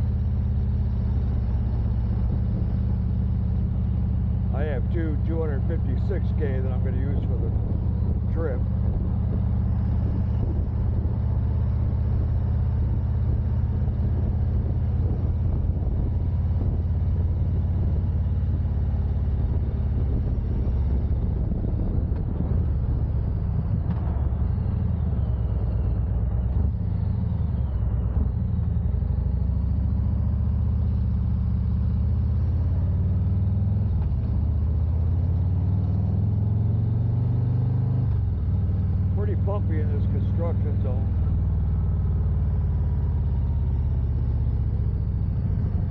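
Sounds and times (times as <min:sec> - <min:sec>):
wind rumble on microphone: 0:00.0 - 0:31.1, 0:41.0 - 0:45.9
motorcycle engine running: 0:00.0 - 0:45.9.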